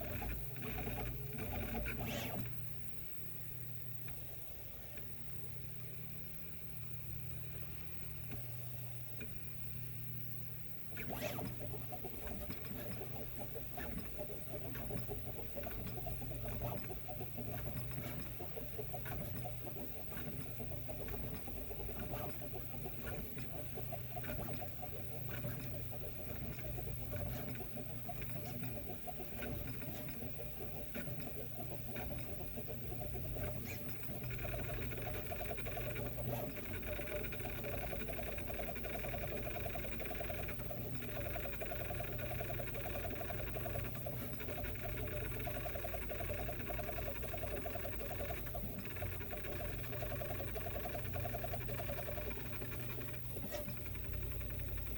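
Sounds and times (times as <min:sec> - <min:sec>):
printer axes chirping and clicking: 0:11.0 - 0:54.9.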